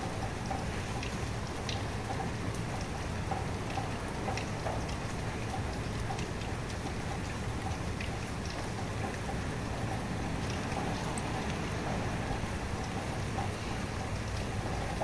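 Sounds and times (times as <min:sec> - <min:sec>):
raindrops ticking close by: 0:00.0 - 0:15.0
steady rainfall: 0:00.0 - 0:15.0.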